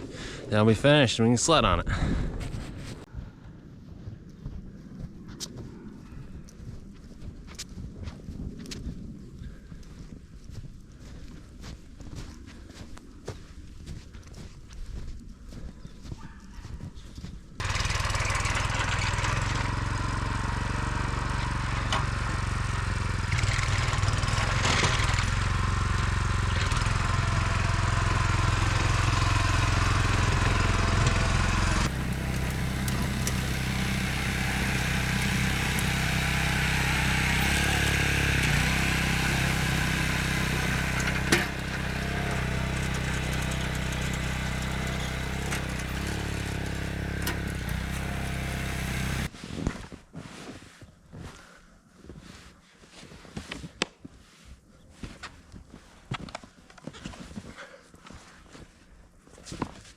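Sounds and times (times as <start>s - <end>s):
small engine running: 17.6s - 49.3s.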